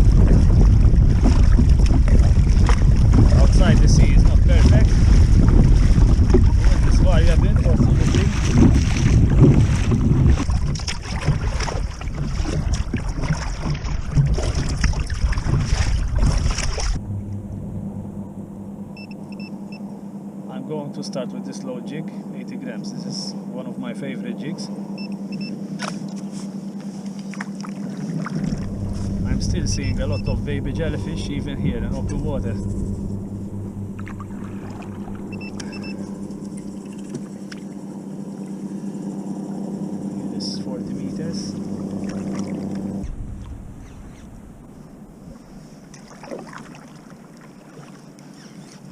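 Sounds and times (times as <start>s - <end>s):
wind buffeting microphone: 0.0s - 19.4s, 28.1s - 40.2s, 40.8s - 45.9s
water splashing against hull: 0.0s - 19.8s, 24.7s - 48.9s
steady low hum: 0.0s - 48.9s
short high beeps: 35.3s - 36.1s.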